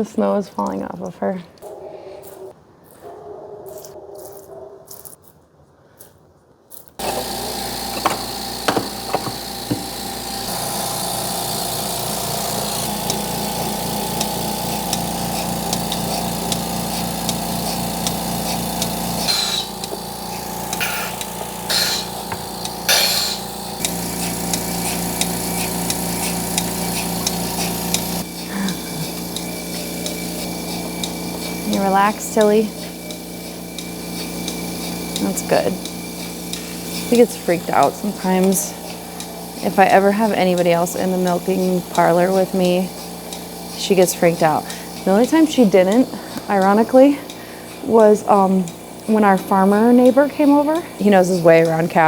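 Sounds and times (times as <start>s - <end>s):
vacuum pump chugging: 7.0s - 52.0s
sharp knocks: 7.9s - 9.9s.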